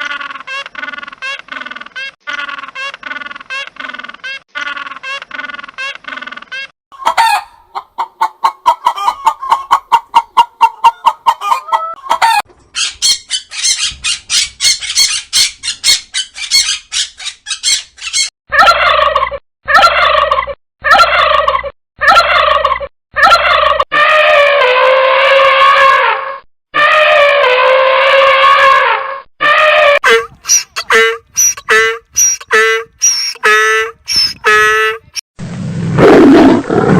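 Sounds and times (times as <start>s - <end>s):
rattling animal call: 30.0s - 35.2s
short animal calls: 30.0s - 35.2s.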